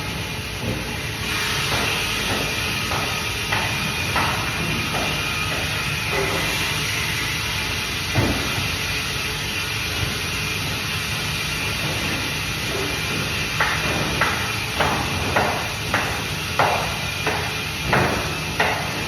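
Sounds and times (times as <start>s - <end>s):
band saw hissing and humming: 0.0s - 19.0s.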